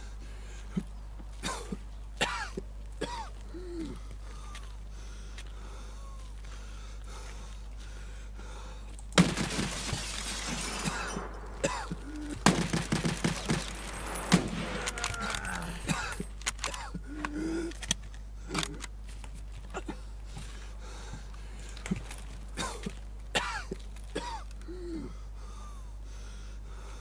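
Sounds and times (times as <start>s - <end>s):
person coughing: 1.4s - 4.0s, 11.6s - 12.1s, 14.9s - 16.9s, 23.4s - 25.1s
voiced gasps: 3.4s - 23.0s, 24.6s - 27.0s.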